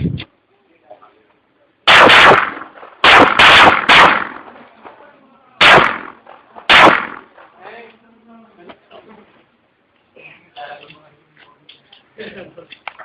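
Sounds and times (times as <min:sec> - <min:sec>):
pistol shots: 0:01.9 - 0:04.7, 0:05.6 - 0:07.5.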